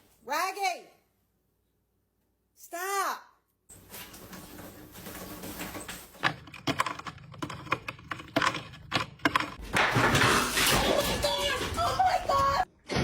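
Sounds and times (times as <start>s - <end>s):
rustling noise: 3.7s - 6.5s.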